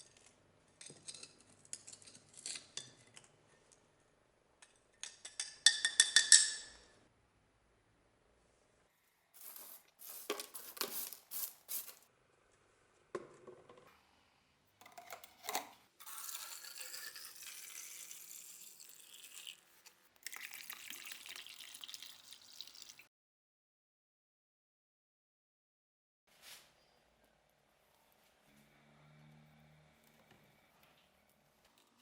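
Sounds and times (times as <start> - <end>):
objects knocking and clinking: 5.0 - 6.9
liquid pouring: 16.0 - 23.1.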